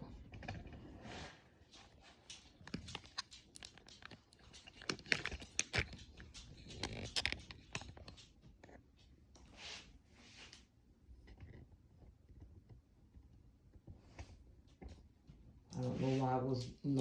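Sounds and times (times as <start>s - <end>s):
sharp clicks and knocks: 2.2s - 8.4s.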